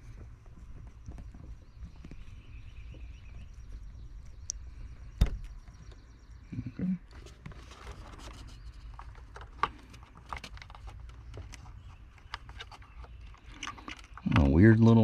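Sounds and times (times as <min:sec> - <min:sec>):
handling rustle: 0:07.0 - 0:14.4.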